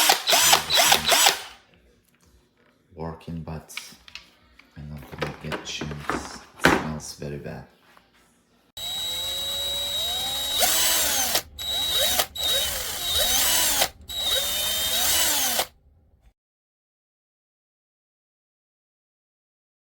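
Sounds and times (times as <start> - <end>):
cordless drill motor whining: 0.0 - 1.6, 8.8 - 15.7.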